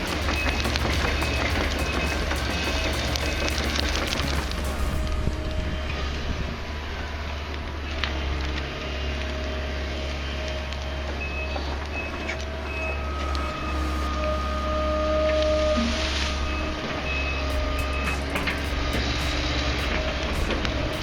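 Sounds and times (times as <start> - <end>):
reversing alarm beeping: 0.0 - 5.2, 10.2 - 21.0
heavy machinery engine rumble: 0.0 - 15.4.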